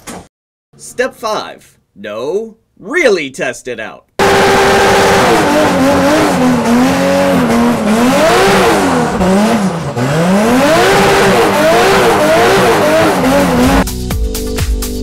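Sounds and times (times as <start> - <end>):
car engine revving: 4.2 - 13.8.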